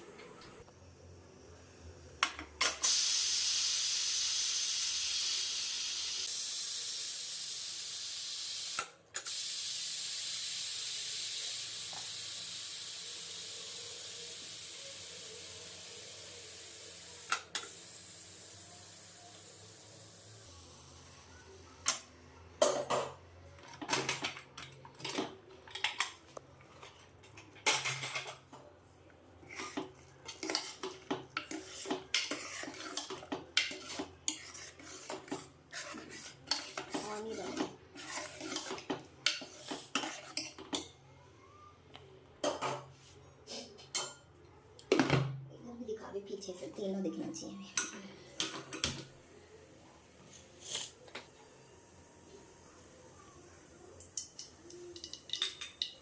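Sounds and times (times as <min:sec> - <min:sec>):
metal pots clattering: 0:54.2 - 0:56.0.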